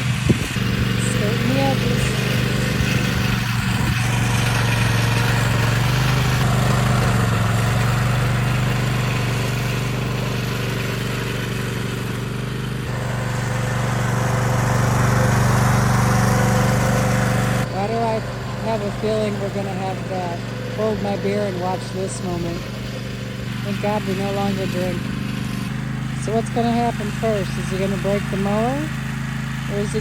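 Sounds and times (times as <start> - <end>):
riding mower engine running: 0.0 - 30.0.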